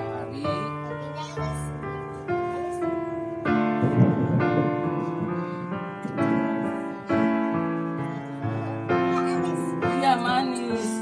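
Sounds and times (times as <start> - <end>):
piano music: 0.0 - 11.0.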